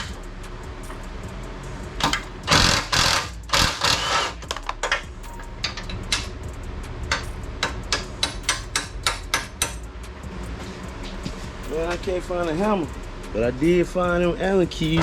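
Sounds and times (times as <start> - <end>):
metal clicking and clanking: 2.0 - 10.1
rattling and scraping of tools: 2.0 - 15.0.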